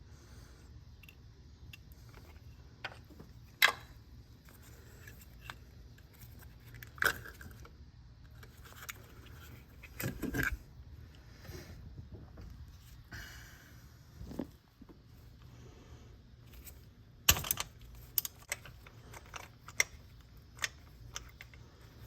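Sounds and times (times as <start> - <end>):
hand tools clicking on parts: 17.3 - 21.7.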